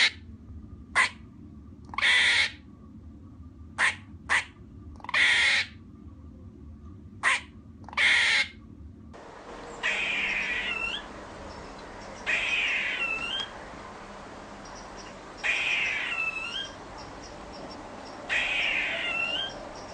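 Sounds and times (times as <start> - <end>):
squirrel barking: 1.9 - 2.6, 3.8 - 5.7, 7.2 - 8.5, 9.4 - 13.6, 14.5 - 19.9.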